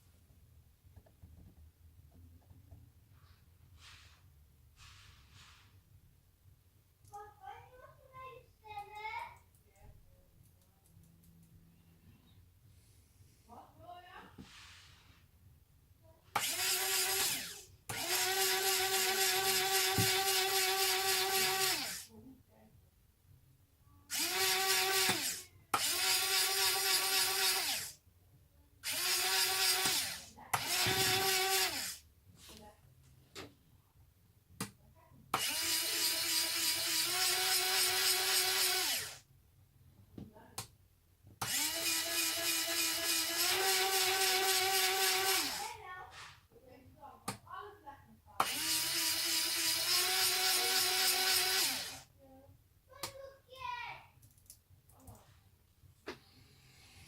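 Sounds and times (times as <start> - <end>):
electric gear motor whining: 16.4 - 22.0, 24.1 - 28.0, 28.8 - 32.0, 35.4 - 39.2, 41.4 - 45.7, 48.4 - 52.1.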